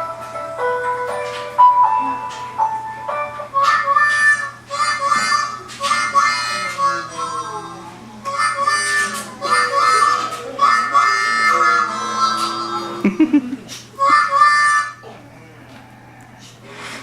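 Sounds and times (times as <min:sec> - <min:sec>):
harmonica playing bluesy chords: 0:00.0 - 0:13.0, 0:14.0 - 0:15.1
dog howling: 0:06.5 - 0:13.0.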